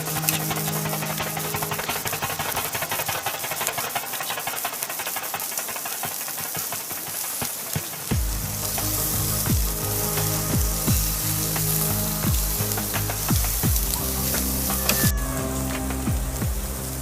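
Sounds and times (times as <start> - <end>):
background music: 0.0 - 4.6, 8.1 - 17.0
meat sizzling on a grill: 0.0 - 17.0
deep electronic beat: 8.0 - 17.0.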